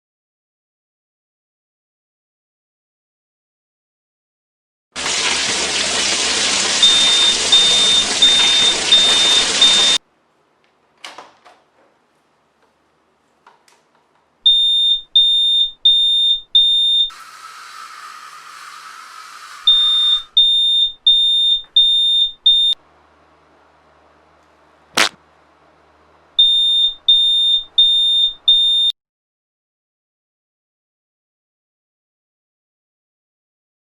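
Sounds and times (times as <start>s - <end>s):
smoke alarm beeping: 6.7s - 10.0s, 14.4s - 17.2s, 19.3s - 22.8s, 26.4s - 28.9s
sharp knock: 25.0s - 25.2s.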